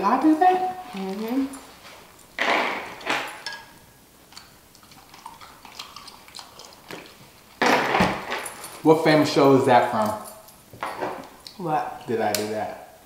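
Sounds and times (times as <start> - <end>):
tableware and shell clatter: 2.4 - 3.8, 7.6 - 8.8, 10.0 - 11.3.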